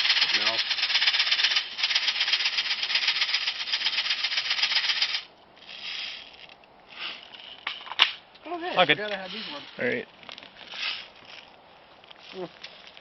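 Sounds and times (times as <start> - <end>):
airsoft gun rattle: 0.0 - 8.2.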